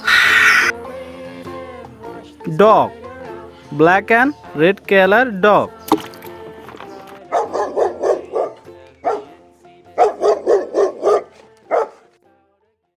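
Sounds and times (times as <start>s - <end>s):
dog barking: 0.0s - 0.7s, 7.3s - 9.4s, 10.0s - 12.1s.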